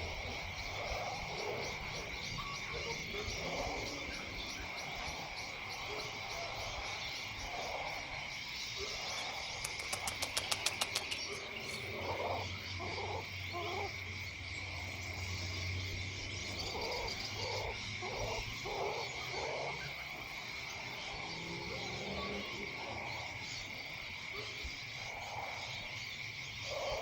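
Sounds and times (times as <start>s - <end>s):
insect drone: 0.0s - 27.0s
sharp clicks: 9.5s - 11.8s.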